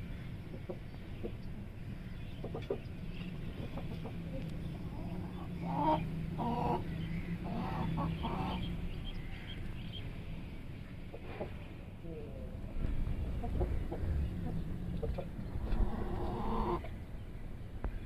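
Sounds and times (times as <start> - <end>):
steady low hum: 0.0 - 18.0
chicken clucking: 2.3 - 8.7, 13.2 - 17.0.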